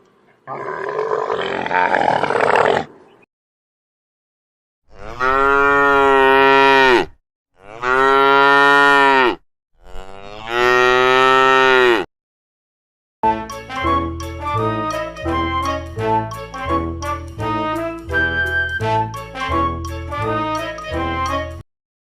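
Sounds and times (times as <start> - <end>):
cow mooing: 4.9 - 12.1.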